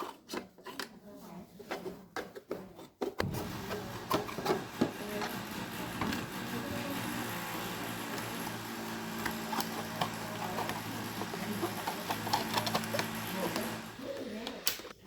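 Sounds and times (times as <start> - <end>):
low mechanical hum: 3.2 - 15.0.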